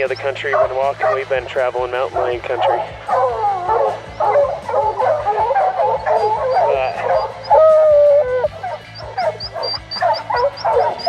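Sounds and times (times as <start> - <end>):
hounds baying: 0.0 - 11.0
dog long howl: 3.1 - 11.0.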